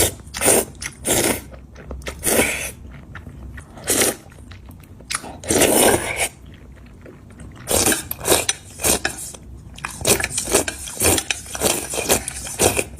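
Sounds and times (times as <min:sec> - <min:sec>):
wet chewing: 0:00.0 - 0:12.9
noisy slurping of noodles: 0:03.8 - 0:04.3, 0:05.4 - 0:06.5, 0:07.6 - 0:12.9.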